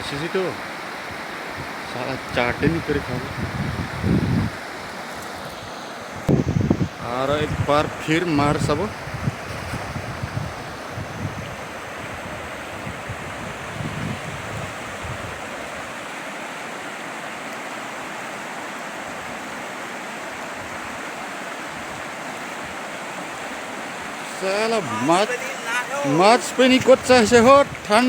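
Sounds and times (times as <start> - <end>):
river water rushing: 0.0 - 28.0
wind buffeting microphone: 1.1 - 4.6, 6.1 - 15.9, 24.8 - 28.0.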